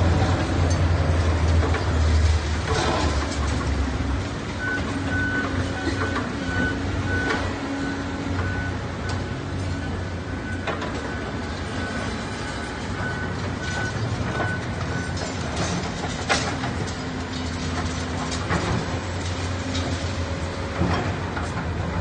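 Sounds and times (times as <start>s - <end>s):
diesel machinery running: 0.0s - 22.0s
reversing alarm beeping: 4.6s - 15.4s.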